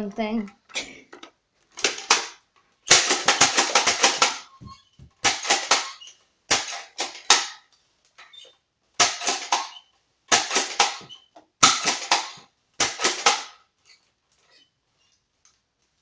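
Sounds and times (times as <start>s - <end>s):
toy blaster plastic clacks: 1.8s - 4.6s, 5.3s - 7.7s, 9.1s - 13.6s.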